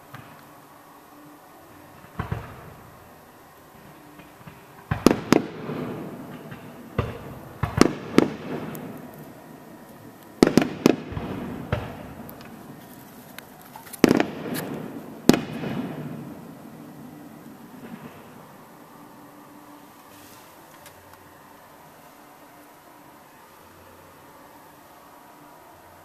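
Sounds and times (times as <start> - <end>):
fireworks rumble: 0.0 - 26.0
fireworks bangs: 1.7 - 20.6.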